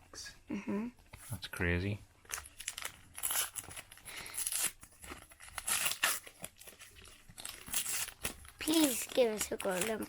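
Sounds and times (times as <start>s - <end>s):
foil wrapper tearing and crinkling: 2.3s - 10.0s.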